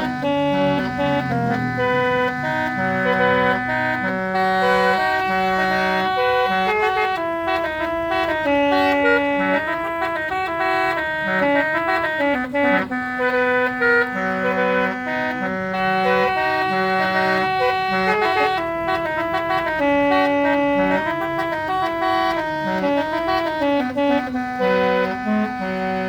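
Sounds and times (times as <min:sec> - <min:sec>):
musical car horn playing a tune: 0:00.0 - 0:26.0.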